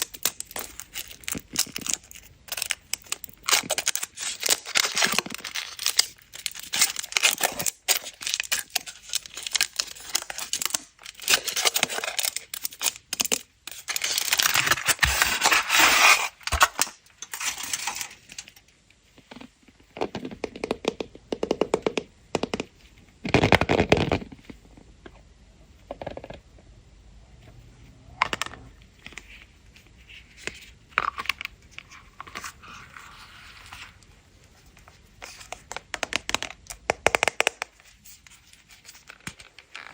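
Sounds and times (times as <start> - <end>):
foil wrapping crinkling and tearing: 0.0 - 18.6.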